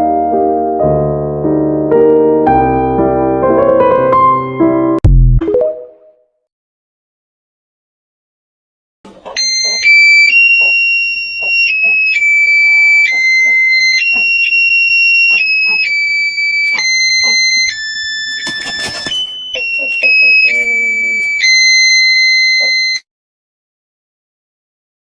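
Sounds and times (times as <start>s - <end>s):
high-pitched alarm-like tune: 9.4s - 23.0s.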